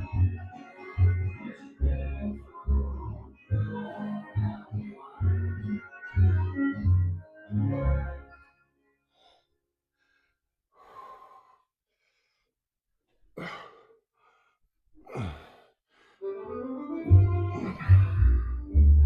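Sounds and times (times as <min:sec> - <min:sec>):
background music: 0:00.0 - 0:09.0, 0:16.2 - 0:19.0
man breathing hard: 0:09.1 - 0:12.6, 0:13.3 - 0:16.4, 0:17.5 - 0:18.6
man sighing: 0:13.4 - 0:14.0, 0:15.0 - 0:15.7, 0:17.5 - 0:18.6.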